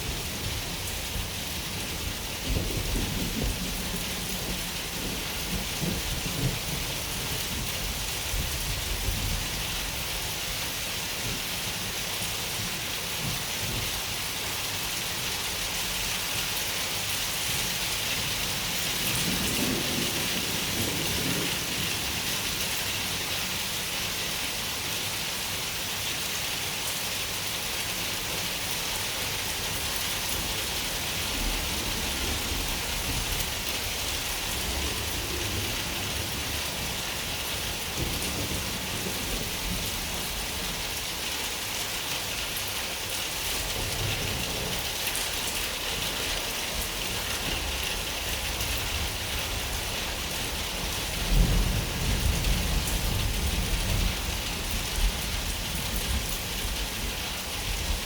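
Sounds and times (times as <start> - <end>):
rain hissing: 16.9 - 58.0.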